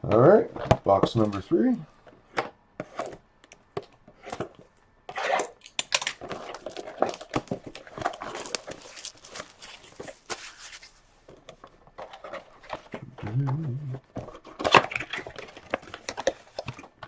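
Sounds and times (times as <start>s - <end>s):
packaging crinkling and tearing: 5.6s - 11.1s, 14.3s - 17.0s.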